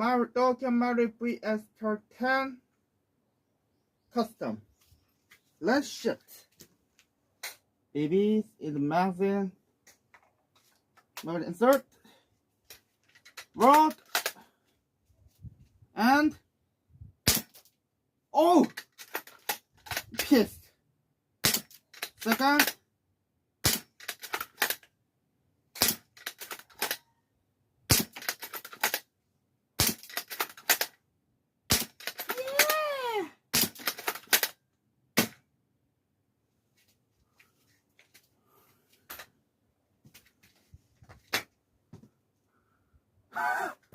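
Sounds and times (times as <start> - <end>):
airsoft rifle shots: 17.3 - 17.6, 23.6 - 23.9, 27.9 - 28.2.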